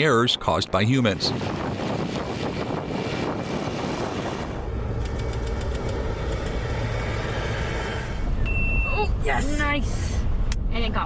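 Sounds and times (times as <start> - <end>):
vehicle engine and tyre noise: 1.0 - 8.9.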